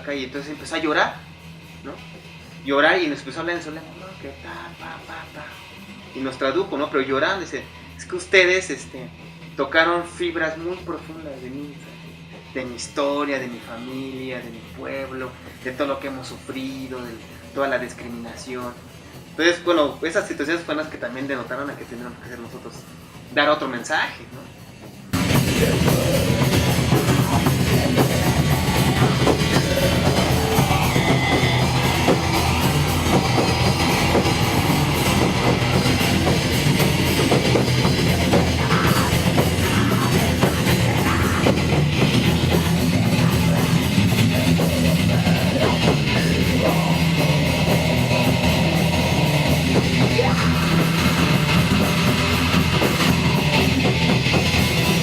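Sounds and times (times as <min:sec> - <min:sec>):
heavy metal music: 0:00.0 - 0:55.0.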